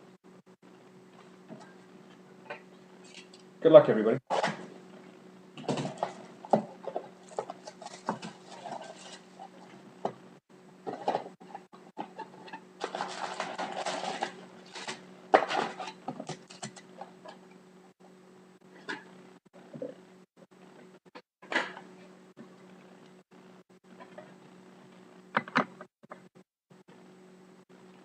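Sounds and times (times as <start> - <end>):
cardboard and wrappers crinkling: 12.8 - 16.7.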